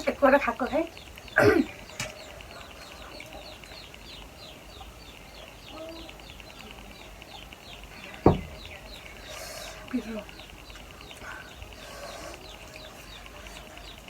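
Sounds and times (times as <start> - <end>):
chicks peeping: 0.0 - 14.0
sharp knock: 8.2 - 8.6.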